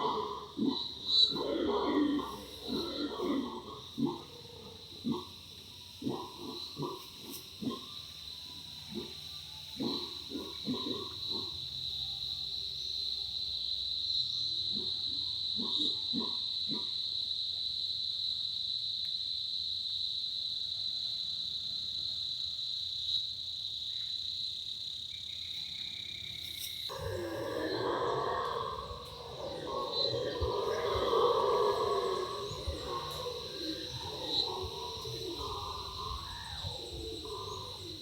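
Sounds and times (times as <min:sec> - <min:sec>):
howler monkeys howling: 0:00.0 - 0:11.8, 0:14.7 - 0:17.0, 0:26.9 - 0:38.0
high-pitched insect drone: 0:00.0 - 0:13.6, 0:26.5 - 0:38.0.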